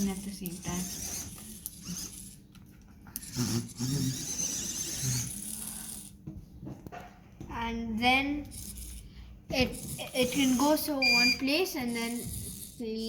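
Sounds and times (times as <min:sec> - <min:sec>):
robot vacuum motor whir: 0:00.0 - 0:02.4, 0:03.2 - 0:06.2, 0:08.5 - 0:09.0, 0:09.6 - 0:13.0.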